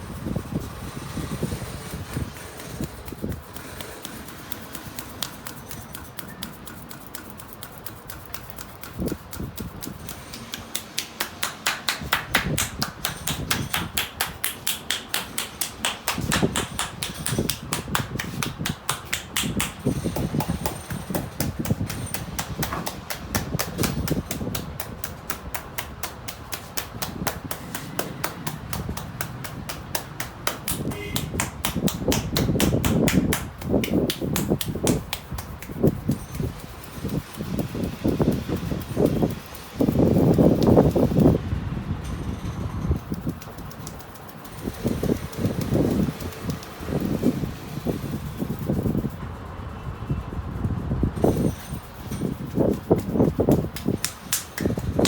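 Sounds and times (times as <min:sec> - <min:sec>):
hands tapping on head: 0:02.0 - 0:41.4, 0:43.0 - 0:47.5, 0:51.7 - 0:55.0.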